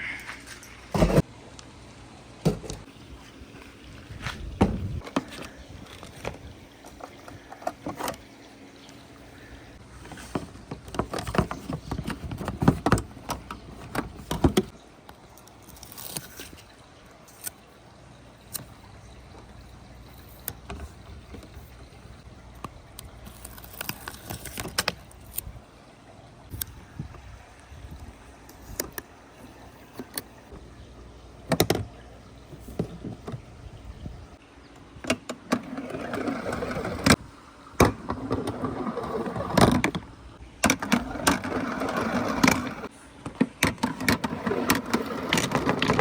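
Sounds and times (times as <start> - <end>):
balls rolling on wooden track: 35.6 - 37.2, 40.8 - 42.9, 44.0 - 46.0.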